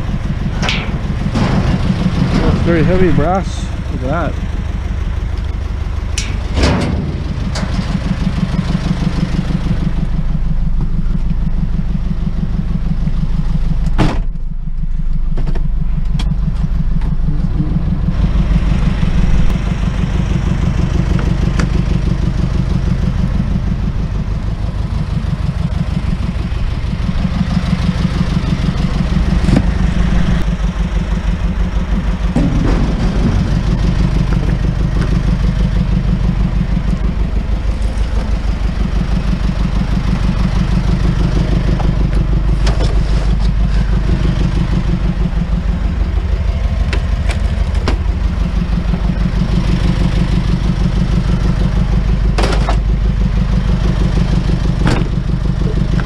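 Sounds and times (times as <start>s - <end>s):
truck engine running: 0.0s - 56.0s
knocks and clatters: 0.4s - 3.1s, 6.2s - 8.8s, 31.8s - 35.6s, 52.4s - 52.9s.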